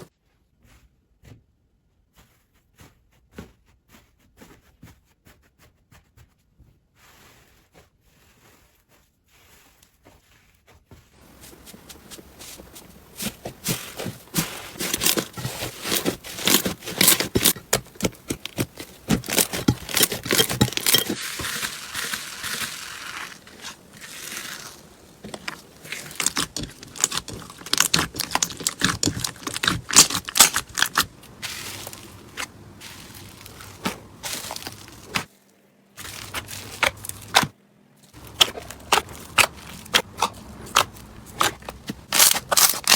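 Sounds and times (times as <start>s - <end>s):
slime squished by hand: 11.3s - 35.3s, 36.0s - 37.5s, 38.2s - 42.9s.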